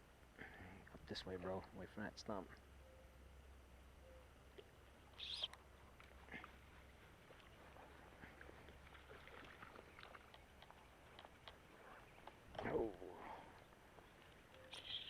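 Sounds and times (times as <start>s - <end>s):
faint ticks: 13.6s - 15.0s.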